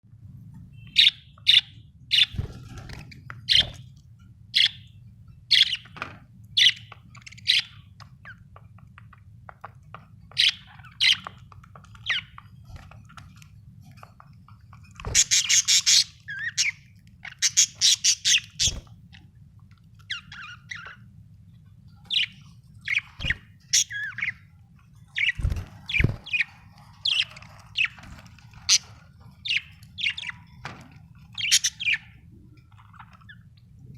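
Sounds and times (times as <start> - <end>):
faint low hum: 0.1 - 33.9
budgerigars chirping: 0.8 - 2.3, 3.5 - 3.8, 4.6 - 4.9, 5.5 - 5.9, 6.6 - 8.4, 10.3 - 12.4, 15.1 - 18.9, 20.0 - 21.1, 22.1 - 24.5, 25.1 - 30.4, 31.3 - 32.2.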